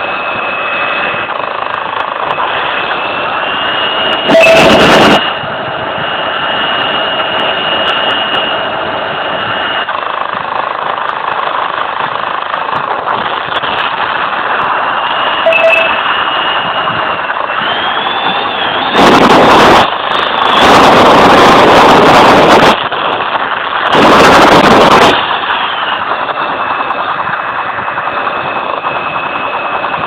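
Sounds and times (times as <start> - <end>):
jet engine roar and whine: 0.0 - 30.0
loud jet blast: 0.0 - 30.0.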